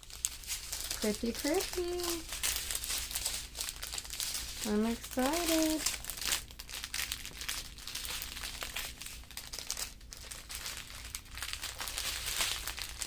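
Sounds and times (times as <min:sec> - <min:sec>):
plastic bags crinkling: 0:00.0 - 0:13.0.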